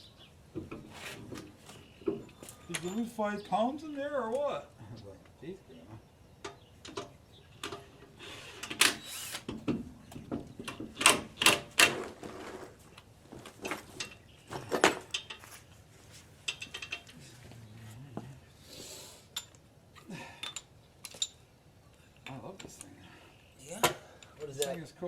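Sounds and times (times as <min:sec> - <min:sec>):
tools knocking and clicking: 0:08.6 - 0:11.9, 0:16.5 - 0:17.1.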